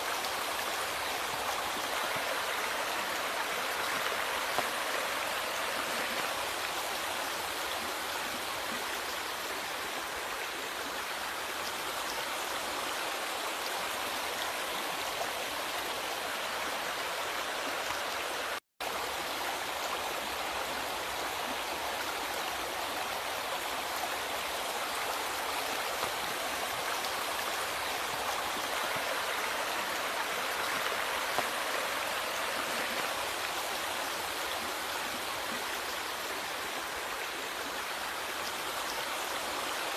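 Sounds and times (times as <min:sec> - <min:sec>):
river water flowing: 0:00.0 - 0:39.9.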